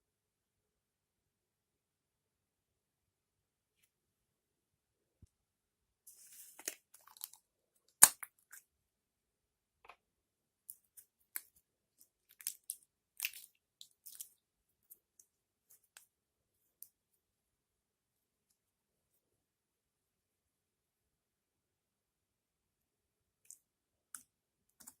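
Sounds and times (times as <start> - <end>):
sharp slime pop: 8.0 - 8.3.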